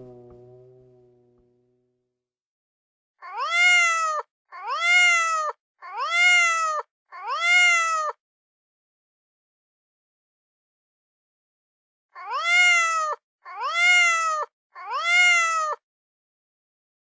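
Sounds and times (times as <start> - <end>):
cat meowing loudly: 3.2 - 8.2, 12.2 - 15.8.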